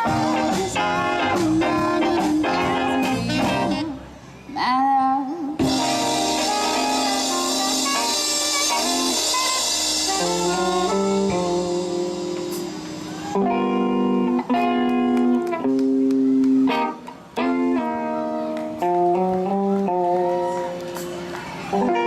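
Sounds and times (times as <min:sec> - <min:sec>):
saxophone: 0:00.0 - 0:04.0, 0:05.6 - 0:12.7
live band playing: 0:00.0 - 0:04.2, 0:05.6 - 0:22.0
guitar: 0:00.0 - 0:22.0.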